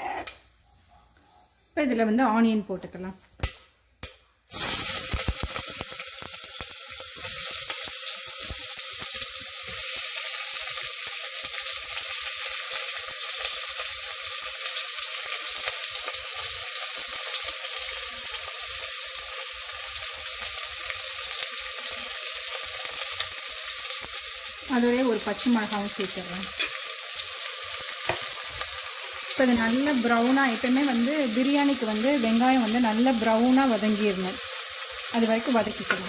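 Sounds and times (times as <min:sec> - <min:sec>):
onions sizzling in hot oil: 0:04.5 - 0:36.0.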